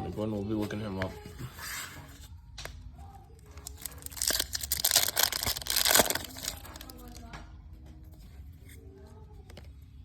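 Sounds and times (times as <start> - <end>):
card pack wrapper tearing: 3.6 - 7.2.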